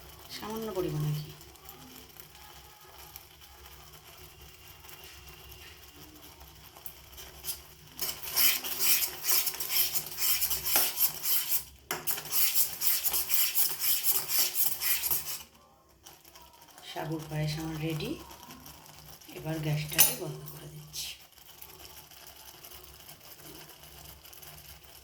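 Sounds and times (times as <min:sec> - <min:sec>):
spoon scraping a cooking pan: 0:06.7 - 0:21.0.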